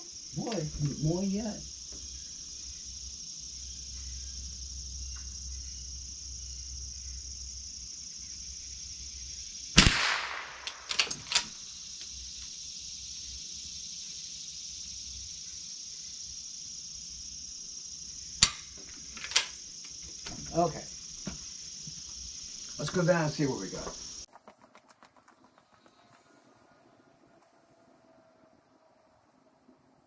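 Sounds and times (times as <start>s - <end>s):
rifle shot: 9.8s - 11.5s
rifle slide action clicks: 9.8s - 11.5s.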